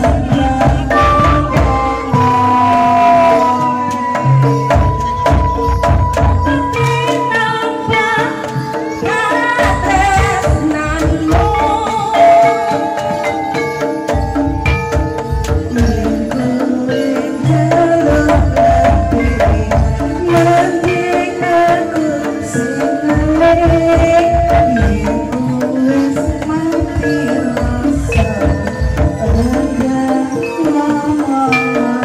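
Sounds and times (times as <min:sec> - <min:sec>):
hand drums beating: 0:00.0 - 0:32.0
ringing pitched tones: 0:00.0 - 0:32.0
wavering sliding melody: 0:00.0 - 0:32.0.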